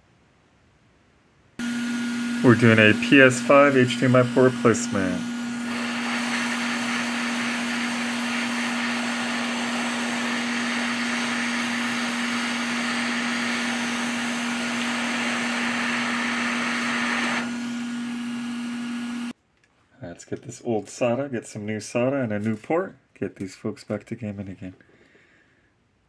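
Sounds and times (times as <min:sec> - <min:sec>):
rushing air: 0:01.6 - 0:17.7
small electric motor whirring: 0:01.6 - 0:19.4.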